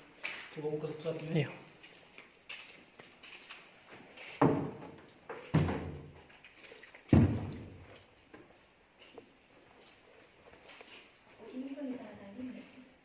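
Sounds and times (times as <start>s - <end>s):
door banging shut: 5.5s - 6.1s, 7.1s - 7.8s.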